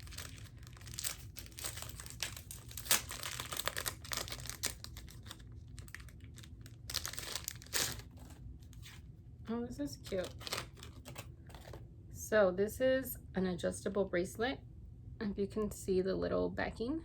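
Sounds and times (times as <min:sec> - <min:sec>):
packaging crinkling and tearing: 0:00.0 - 0:09.1, 0:09.9 - 0:11.8.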